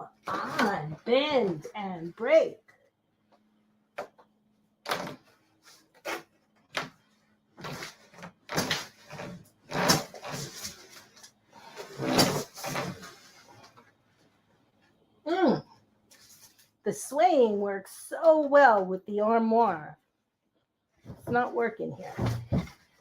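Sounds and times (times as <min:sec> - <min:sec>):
closet panels knocking and rattling: 0:21.0 - 0:23.0.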